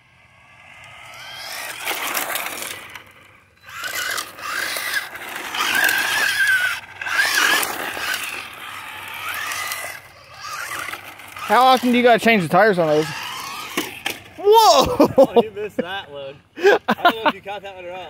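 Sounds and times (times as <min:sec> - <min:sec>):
electric motor whine: 0:00.0 - 0:14.4
small tyres rushing on pavement: 0:00.0 - 0:15.7.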